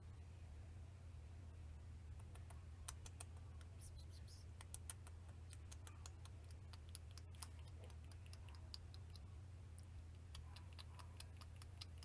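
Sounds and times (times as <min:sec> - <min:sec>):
low steady hum: 0:00.0 - 0:12.0
light clicks and ticks: 0:02.2 - 0:03.8, 0:04.6 - 0:12.0.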